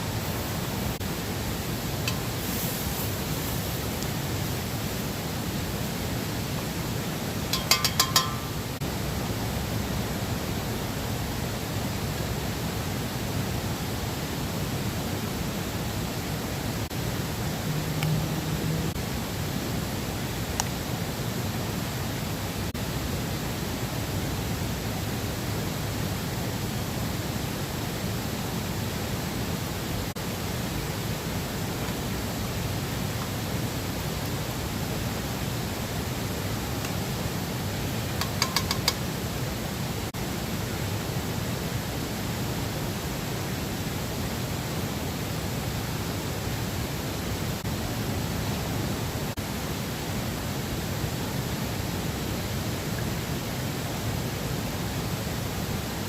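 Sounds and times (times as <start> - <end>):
ringing metallic clinks: 7.5 - 8.7.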